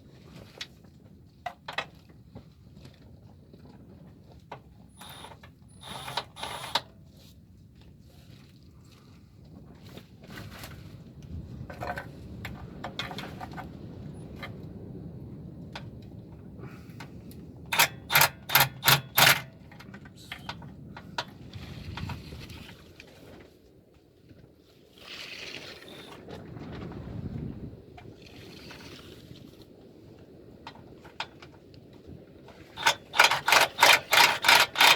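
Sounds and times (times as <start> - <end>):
hand ratchet clicking: 5.0 - 6.8, 17.7 - 19.5, 32.8 - 34.9.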